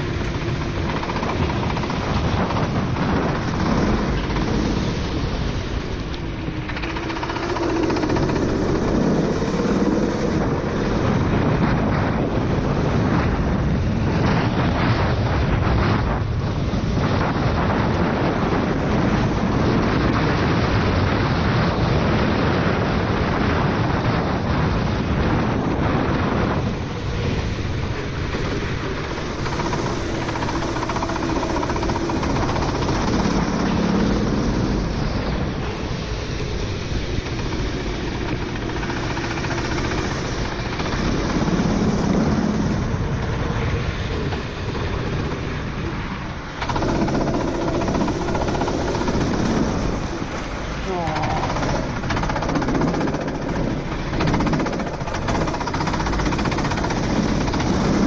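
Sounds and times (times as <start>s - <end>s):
kart engine running: 0.0s - 58.0s
wind on microphone: 0.0s - 58.0s.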